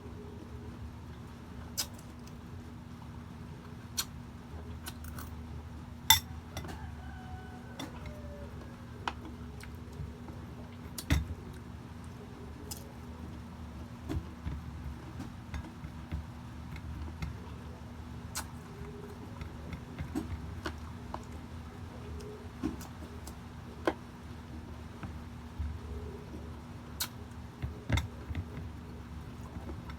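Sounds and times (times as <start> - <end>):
steady low hum: 0.0 - 29.9
cutlery and dishes clicking: 6.1 - 6.8.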